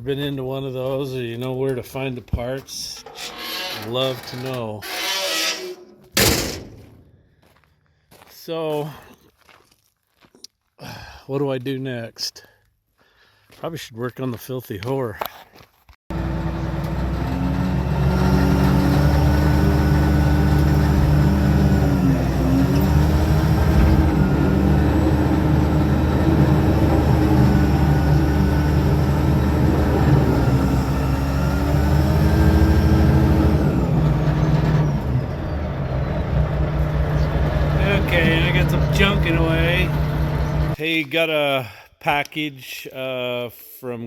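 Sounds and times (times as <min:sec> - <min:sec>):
heavy vehicle engine under load: 0:16.1 - 0:40.8.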